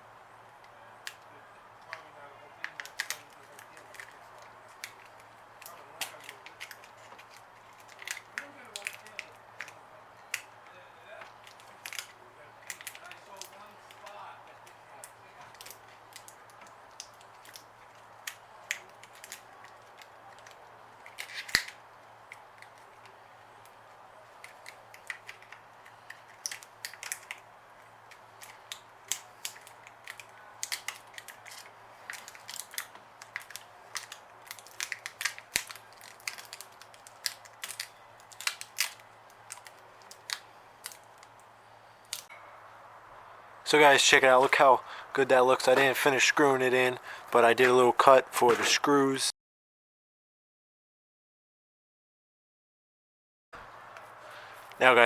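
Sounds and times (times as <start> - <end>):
plastic film crackling: 1.8 - 42.3.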